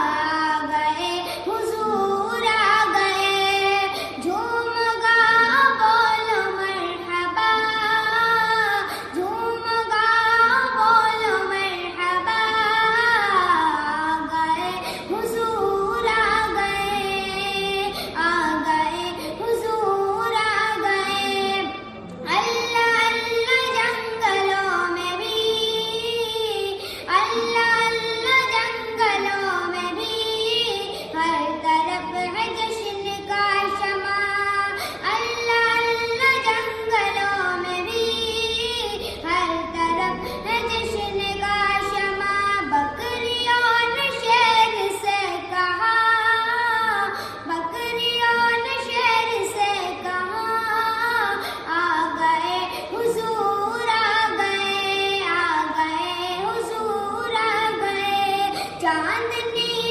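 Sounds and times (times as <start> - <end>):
devotional song in a high voice: 0.0 - 59.9.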